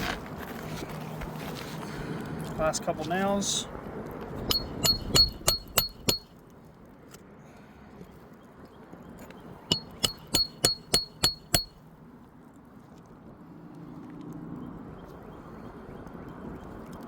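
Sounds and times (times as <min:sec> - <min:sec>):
hammer driving nails: 0:04.5 - 0:06.3, 0:09.7 - 0:11.7.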